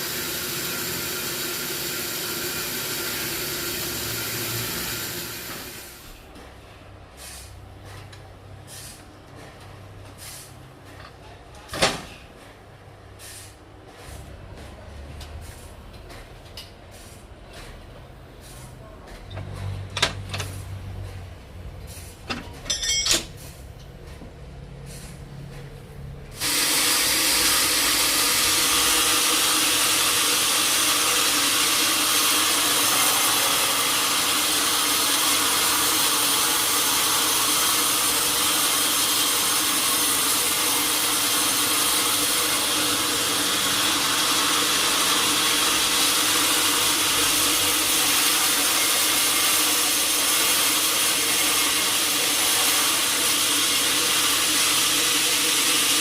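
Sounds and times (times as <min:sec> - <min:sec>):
saw cutting through log: 0:26.4 - 0:56.0.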